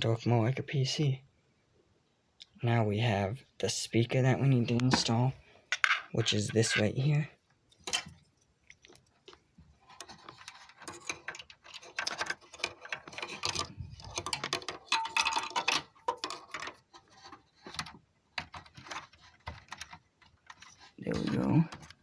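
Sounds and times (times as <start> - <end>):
small clicks and rattles: 7.7 - 22.0.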